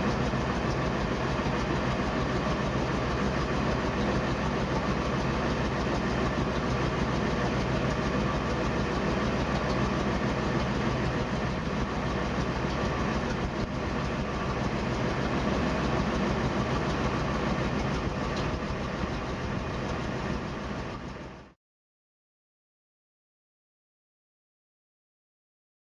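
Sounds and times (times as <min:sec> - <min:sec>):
truck engine idling pulsing: 0:00.0 - 0:21.6.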